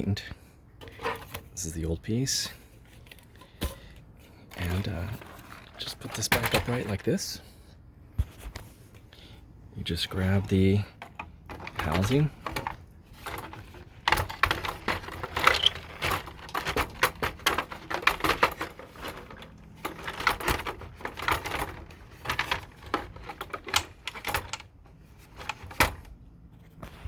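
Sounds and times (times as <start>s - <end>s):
plastic parts clicking and rattling: 2.8s - 7.4s, 9.9s - 27.0s.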